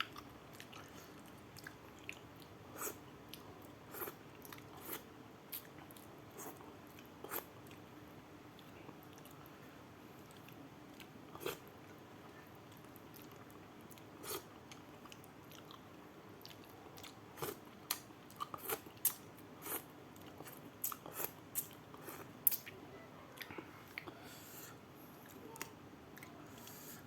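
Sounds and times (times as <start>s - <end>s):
person chewing: 0.0s - 7.8s, 8.6s - 9.5s, 10.2s - 11.9s, 12.7s - 22.8s, 23.4s - 24.3s.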